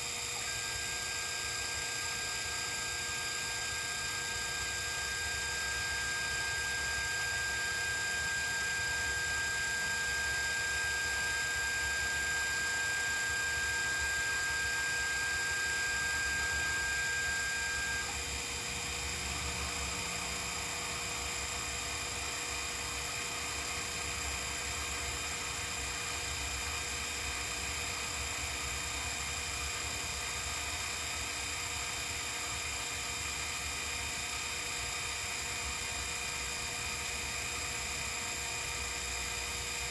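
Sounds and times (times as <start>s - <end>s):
milling machine motors whining: 0.0s - 39.9s.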